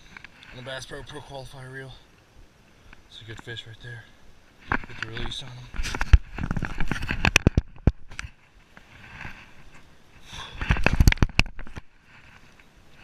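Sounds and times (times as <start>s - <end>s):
handling knocks and crackles: 4.6s - 9.8s.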